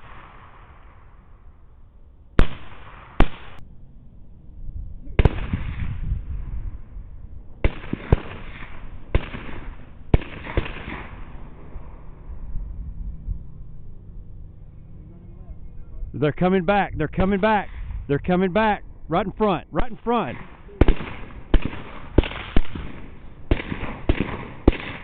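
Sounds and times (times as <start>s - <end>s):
rifle shots with echo: 0.0s - 1.4s, 2.4s - 3.6s, 5.2s - 6.5s, 7.6s - 12.2s, 19.8s - 25.0s.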